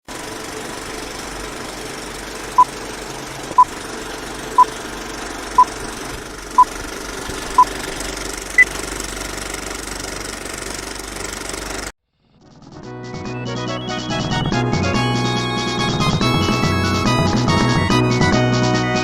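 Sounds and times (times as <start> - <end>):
steady mechanical hum: 0.1 - 11.9.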